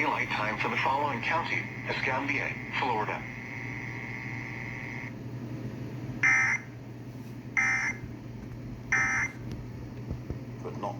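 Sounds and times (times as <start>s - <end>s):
buzzy digital data bursts: 1.0s - 5.1s.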